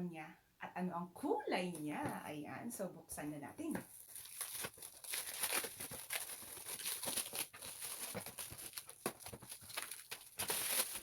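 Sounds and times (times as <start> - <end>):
packaging rustling and tearing: 3.8 - 11.0.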